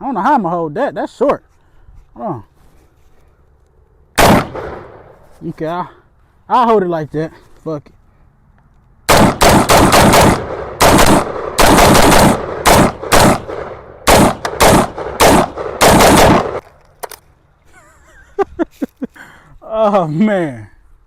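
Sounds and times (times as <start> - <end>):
handgun shots: 4.2 - 5.0, 9.1 - 16.6.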